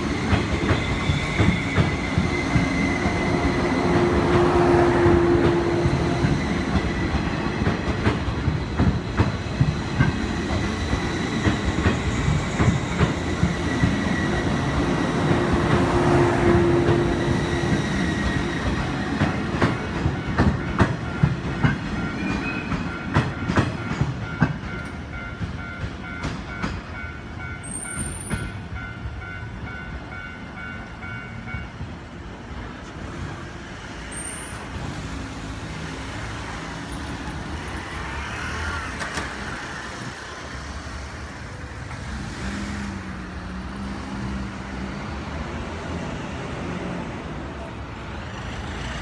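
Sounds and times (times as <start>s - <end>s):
train wheels clattering over joints: 0.0s - 27.0s
level crossing warning bell: 19.2s - 31.9s.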